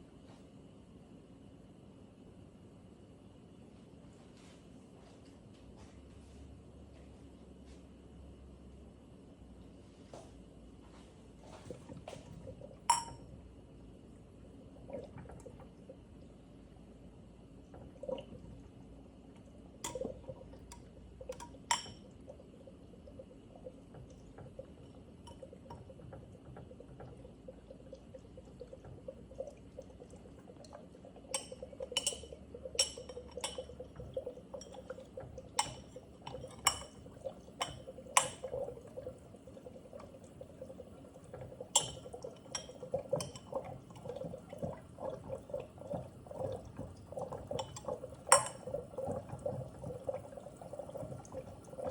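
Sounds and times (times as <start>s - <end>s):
water bubbling in glass chamber: 11.7s - 13.5s, 14.4s - 51.9s.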